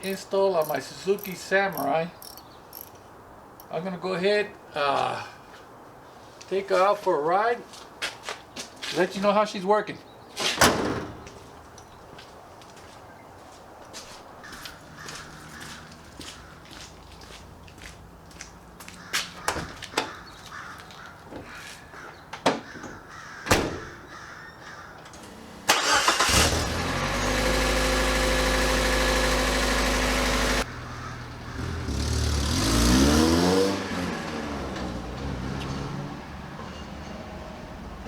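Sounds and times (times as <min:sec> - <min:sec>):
car engine starting and revving: 0:25.2 - 0:36.6.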